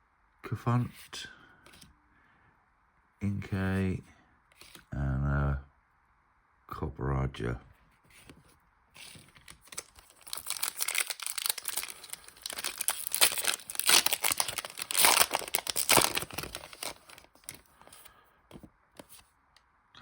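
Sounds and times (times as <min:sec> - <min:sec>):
foil wrapper crinkling and tearing: 0:09.1 - 0:18.1.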